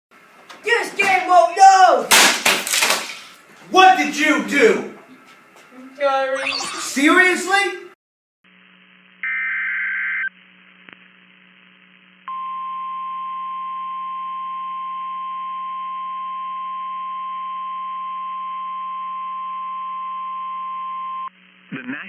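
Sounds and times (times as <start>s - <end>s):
warbling data tones: 6.1s - 7.6s.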